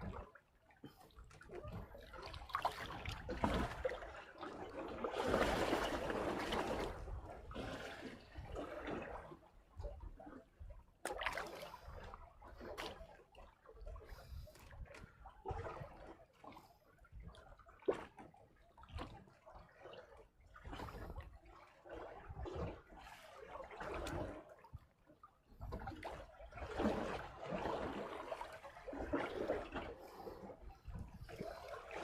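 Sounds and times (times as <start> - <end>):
water splashing and trickling: 0.0 - 32.0.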